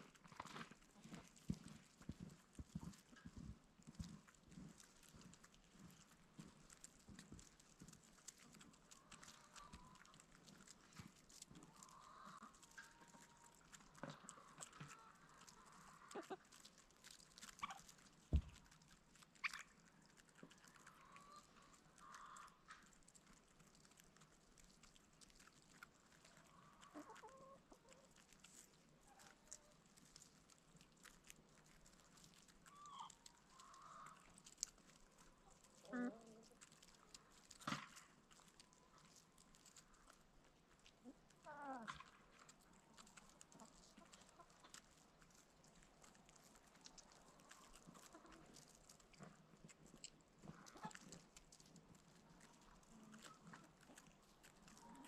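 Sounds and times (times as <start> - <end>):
faint ticks and scratches: 0.0 - 55.0
chickens calling quietly: 3.0 - 24.2, 25.0 - 55.0
poultry clucking: 8.6 - 10.3, 11.0 - 16.5, 17.5 - 18.5, 20.8 - 22.9, 26.2 - 28.2, 32.7 - 38.0, 41.0 - 44.8, 47.2 - 48.6, 50.5 - 51.1, 54.6 - 55.0.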